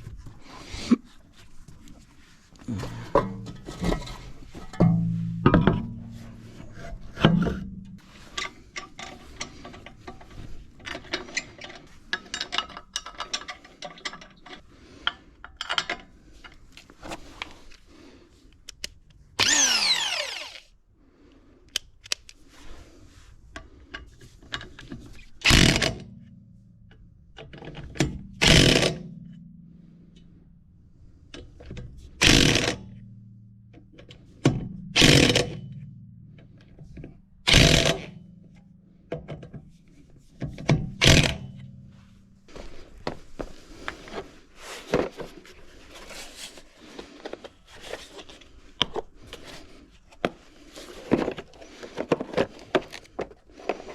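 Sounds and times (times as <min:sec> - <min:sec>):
electric impact wrench bursts: 0:19.4 - 0:20.7
motor winding down whine: 0:19.4 - 0:20.7.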